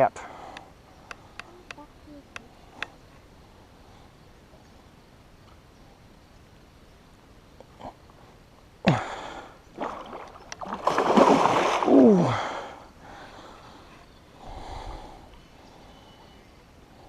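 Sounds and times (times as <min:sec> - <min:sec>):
fish thrashing water splashing: 0:09.8 - 0:12.1.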